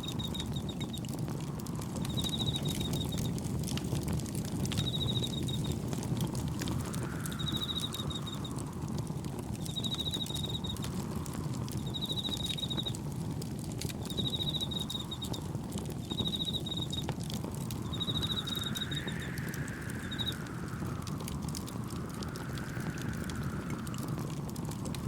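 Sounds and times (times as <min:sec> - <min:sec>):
crickets chirping: 0:00.0 - 0:01.0, 0:01.7 - 0:03.4, 0:04.7 - 0:13.1, 0:14.0 - 0:25.0
campfire crackling: 0:00.0 - 0:25.0
gentle waves: 0:00.0 - 0:25.0
wind: 0:00.0 - 0:25.0
whooshing swell: 0:17.8 - 0:24.5.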